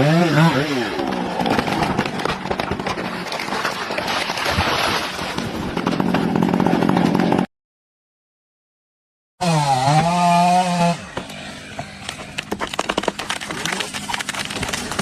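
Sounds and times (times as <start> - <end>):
chainsaw engine running: 5.7 - 7.5, 9.4 - 15.0.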